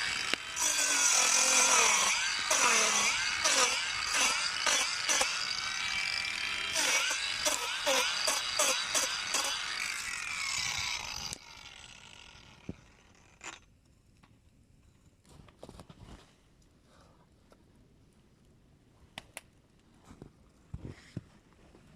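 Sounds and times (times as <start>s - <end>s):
hand saw cutting wood: 0.0s - 13.6s.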